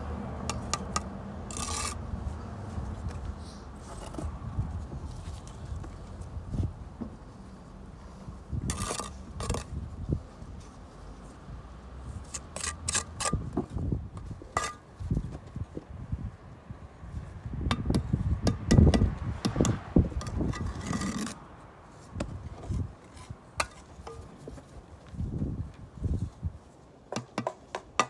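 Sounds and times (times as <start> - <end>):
trowel scraping mortar: 1.5 - 2.0, 8.7 - 9.7, 12.2 - 13.5, 20.2 - 21.4.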